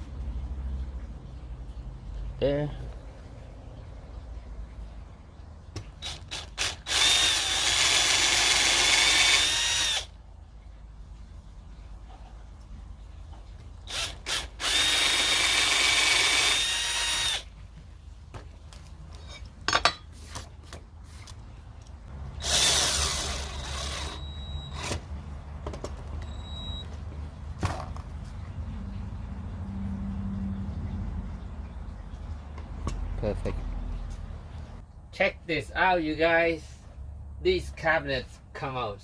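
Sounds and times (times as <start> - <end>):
power drill whining: 6.0 - 10.1, 13.9 - 17.5, 22.4 - 25.0.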